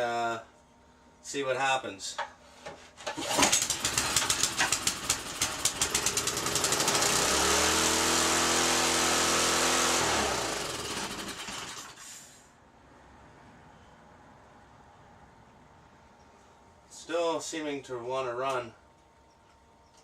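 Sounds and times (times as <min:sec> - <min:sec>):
small rototiller engine running: 0:03.1 - 0:12.0.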